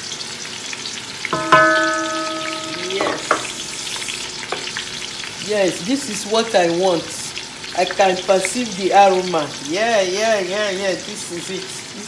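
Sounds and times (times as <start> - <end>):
onions sizzling in hot oil: 0.0 - 12.0
steady pitched tone: 1.4 - 5.4.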